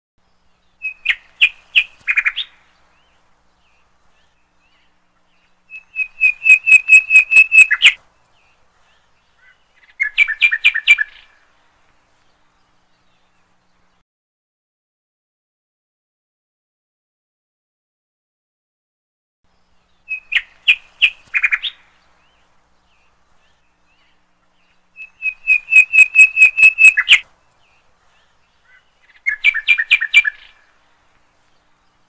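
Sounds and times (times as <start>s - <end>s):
bulbul chirping song: 0.3s - 8.6s, 9.3s - 11.4s, 19.8s - 30.8s.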